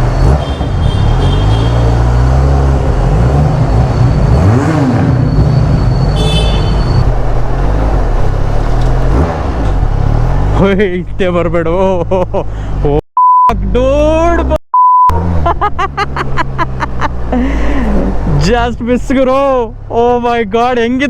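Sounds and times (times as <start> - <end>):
motorcycle engine revving: 0.0 - 10.6.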